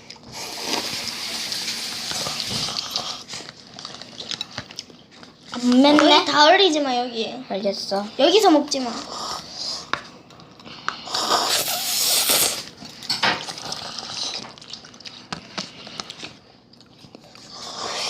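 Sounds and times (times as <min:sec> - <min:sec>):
slurping noodles: 0:00.0 - 0:04.5, 0:11.0 - 0:12.8, 0:13.4 - 0:16.4, 0:17.3 - 0:18.0.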